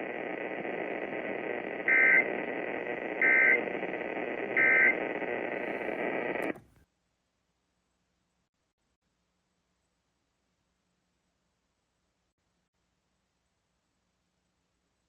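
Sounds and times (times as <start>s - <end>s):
radio receiver hiss: 0.0s - 6.8s.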